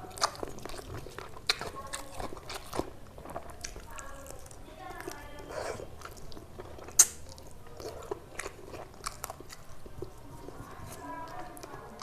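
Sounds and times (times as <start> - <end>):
wet mouth clicks: 0.0 - 9.7
chewing and biting: 0.0 - 12.0.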